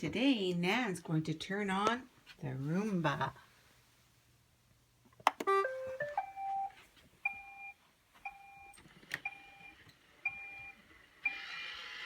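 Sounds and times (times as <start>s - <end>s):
robot vacuum two-tone beep: 9.3s - 11.6s.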